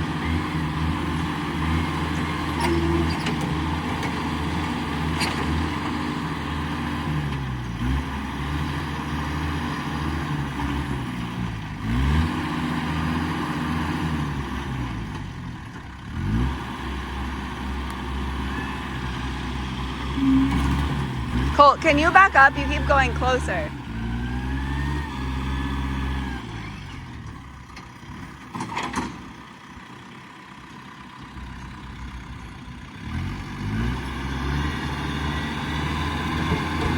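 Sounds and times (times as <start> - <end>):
vehicle engine running: 14.4 - 28.5.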